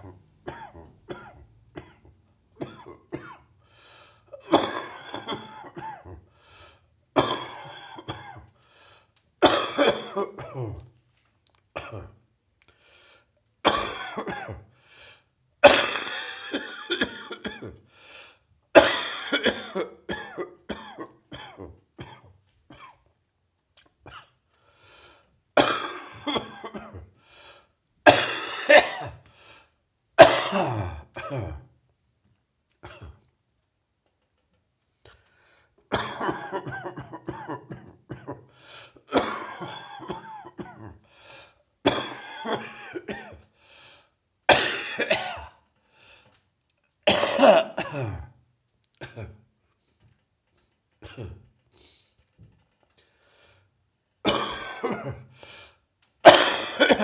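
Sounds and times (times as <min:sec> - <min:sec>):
person coughing: 0:00.0 - 0:03.5, 0:04.4 - 0:06.3, 0:07.2 - 0:08.5, 0:09.4 - 0:10.9, 0:11.8 - 0:12.2, 0:13.7 - 0:14.7, 0:15.6 - 0:17.8, 0:18.8 - 0:23.1, 0:25.6 - 0:27.1, 0:28.1 - 0:29.2, 0:30.2 - 0:31.7, 0:35.9 - 0:41.0, 0:41.8 - 0:43.5, 0:44.5 - 0:45.6, 0:47.1 - 0:48.4, 0:49.0 - 0:49.5, 0:51.0 - 0:51.9, 0:54.2 - 0:55.4, 0:56.2 - 0:57.0.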